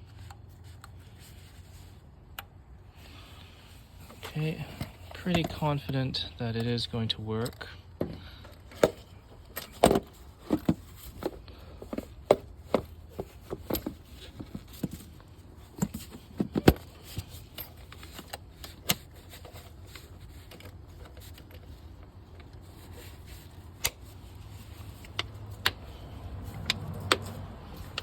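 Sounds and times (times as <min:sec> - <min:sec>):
tools clicking on engine: 0:07.4 - 0:28.0.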